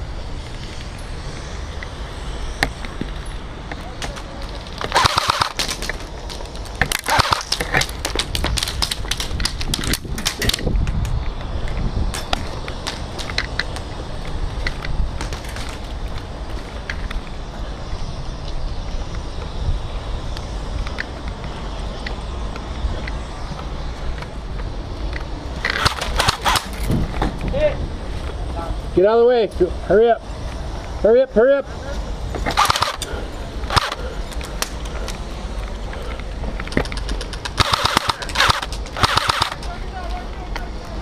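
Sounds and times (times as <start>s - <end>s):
steady low rumble: 0.0s - 41.0s
airsoft guns firing: 4.8s - 6.0s, 6.9s - 8.0s, 25.7s - 26.8s, 32.5s - 33.1s, 33.7s - 34.0s, 37.6s - 39.7s.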